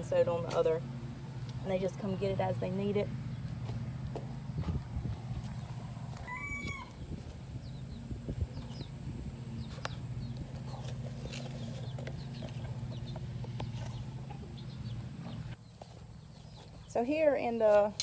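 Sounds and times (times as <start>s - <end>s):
steady low hum: 0.0s - 17.1s
chickens clucking and calling: 3.2s - 16.7s.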